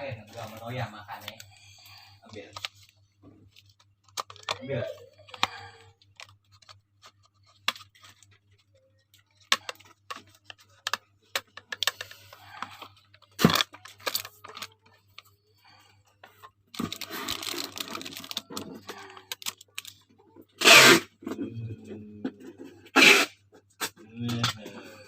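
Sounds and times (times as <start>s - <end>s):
packaging clicks and taps: 3.5s - 8.3s, 9.2s - 15.3s, 16.2s - 20.0s
packaging crinkling: 16.7s - 20.0s.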